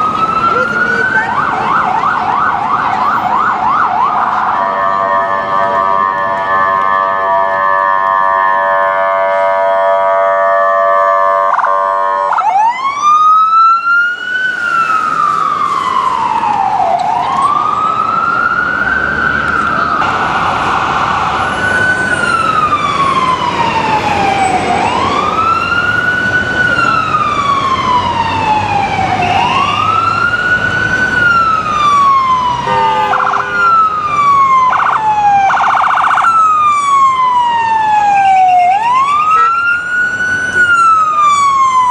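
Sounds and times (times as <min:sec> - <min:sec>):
electronic wail siren: 0:00.0 - 0:41.9
ambulance horn blast: 0:04.6 - 0:12.4, 0:32.6 - 0:34.0, 0:39.3 - 0:39.7.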